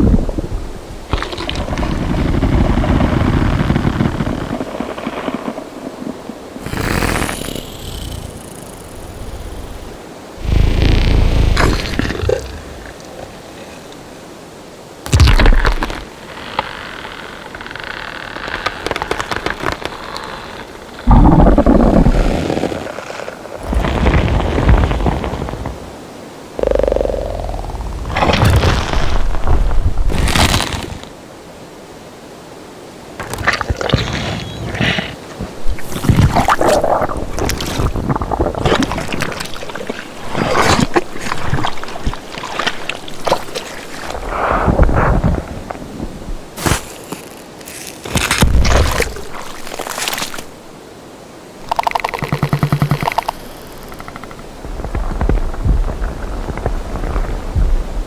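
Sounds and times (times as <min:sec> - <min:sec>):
background ambience: 0:00.0 - 0:58.0
crackling clicking texture: 0:01.1 - 0:13.1, 0:15.1 - 0:25.8, 0:26.6 - 0:31.1, 0:35.6 - 0:45.8, 0:51.6 - 0:58.0
deep creature sound: 0:06.6 - 0:13.9, 0:21.0 - 0:25.6, 0:26.6 - 0:30.2
organic creature noises: 0:06.6 - 0:14.0, 0:15.1 - 0:25.8, 0:26.6 - 0:31.0, 0:33.2 - 0:45.8, 0:51.6 - 0:57.4.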